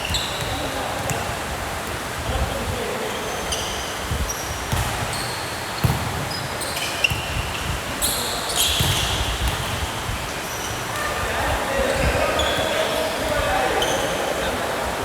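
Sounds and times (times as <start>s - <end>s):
ball bouncing on court: 0.0s - 1.3s, 4.7s - 7.4s, 8.6s - 9.8s
sneaker squeaks: 0.0s - 1.3s, 3.0s - 11.2s, 11.8s - 14.4s.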